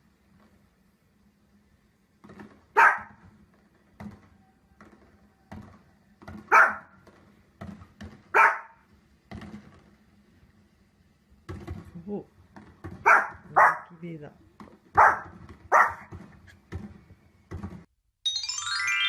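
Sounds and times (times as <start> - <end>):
dog barking: 2.7 - 3.2, 6.5 - 7.0, 8.3 - 8.8, 13.0 - 14.0, 15.0 - 16.1.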